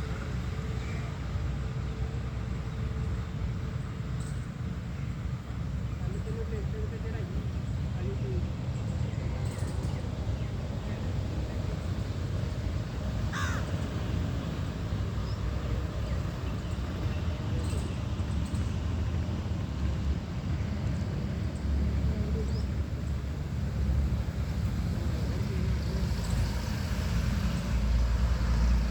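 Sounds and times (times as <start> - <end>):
crow cawing: 13.3 - 13.7.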